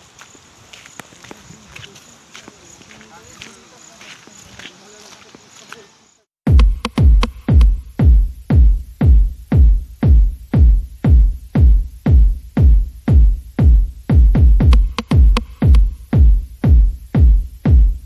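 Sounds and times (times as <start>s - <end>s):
heavy kick drum thuds: 6.4s - 18.0s
electronic dance music: 6.5s - 18.0s.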